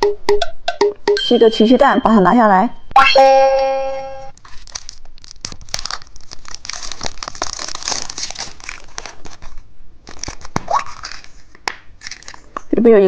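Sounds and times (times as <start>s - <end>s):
plastic wrapper crinkling and tearing: 4.3s - 12.7s.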